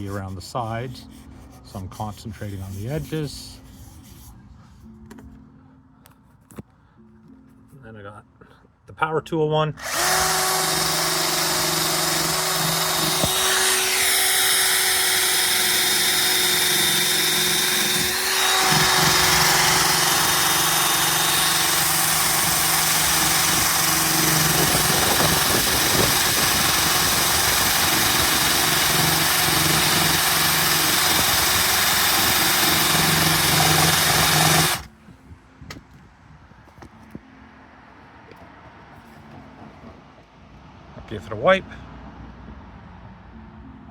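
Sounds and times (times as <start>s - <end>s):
electric drill motor whine: 9.8s - 34.9s.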